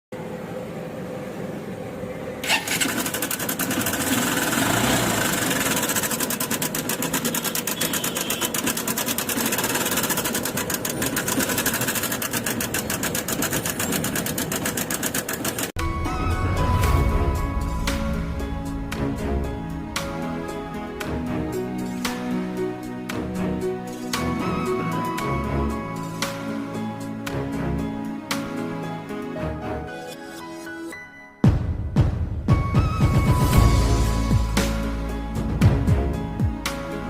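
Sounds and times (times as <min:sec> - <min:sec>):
motorcycle engine ticking clatter: 0:02.5 - 0:15.7.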